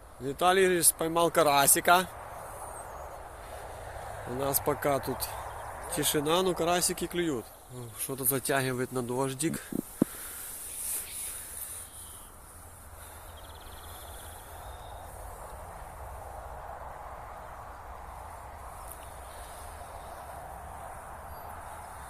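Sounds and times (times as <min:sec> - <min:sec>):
even outdoor hiss: 0:00.0 - 0:22.0.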